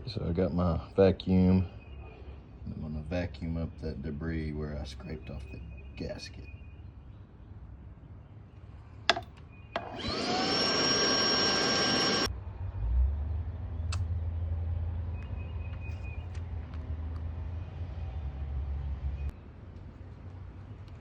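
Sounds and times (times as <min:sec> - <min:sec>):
vacuum cleaner switch click: 0:09.1 - 0:12.3
vacuum cleaner motor whine: 0:09.8 - 0:12.3.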